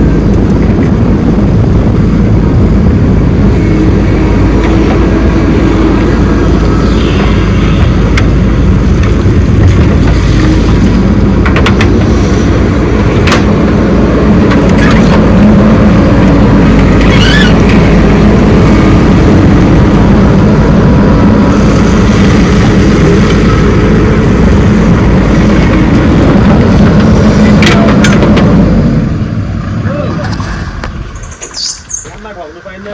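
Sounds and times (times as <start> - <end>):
heavy diesel machinery running: 0.0 - 32.9
brief squeal: 17.0 - 17.6, 31.2 - 32.2.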